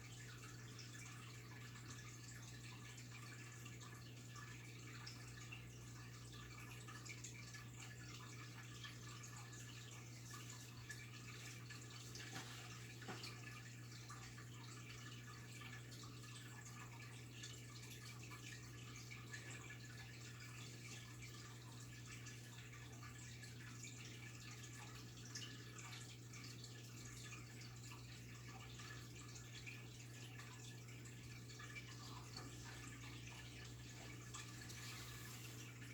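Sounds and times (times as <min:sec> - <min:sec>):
water dripping and bubbling: 0:00.0 - 0:35.9.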